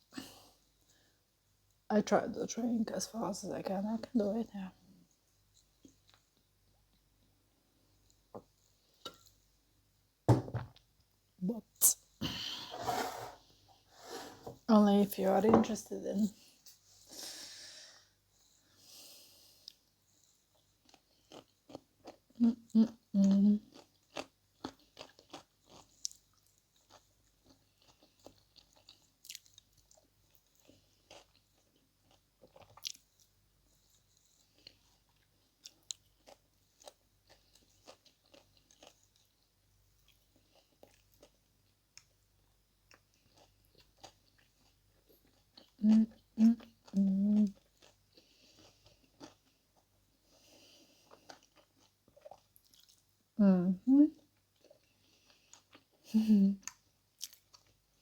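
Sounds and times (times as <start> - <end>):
person chewing: 19.6 - 42.1, 42.9 - 53.1, 54.3 - 56.0, 56.6 - 57.8.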